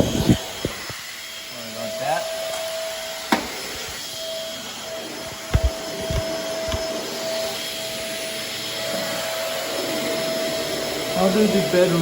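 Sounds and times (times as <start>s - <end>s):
vacuum cleaner running: 0.0s - 12.0s
dull thumps: 5.4s - 6.9s.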